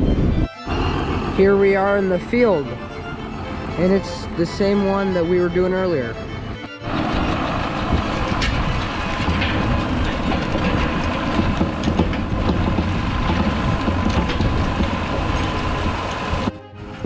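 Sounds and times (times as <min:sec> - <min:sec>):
tractor engine drone: 0:00.0 - 0:17.0
rolling drum clatter: 0:06.8 - 0:16.6.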